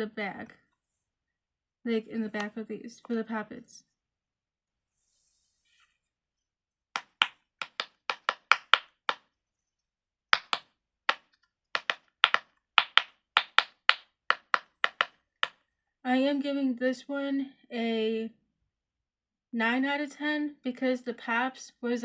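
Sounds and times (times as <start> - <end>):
pop-it fidget toy popping: 7.0 - 9.3, 10.3 - 15.6.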